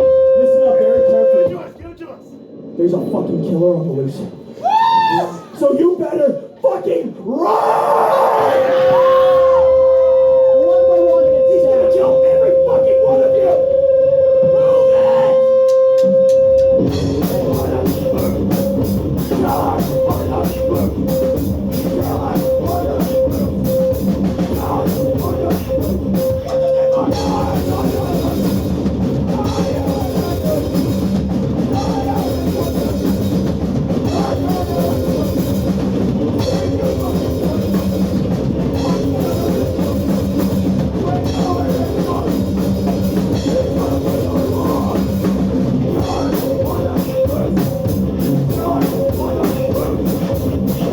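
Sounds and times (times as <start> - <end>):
hardcore band playing: 0.0 - 3.4, 8.3 - 50.9
steady held tone: 0.0 - 5.7
distorted guitar: 8.6 - 50.9
pounding drum kit: 15.7 - 50.9.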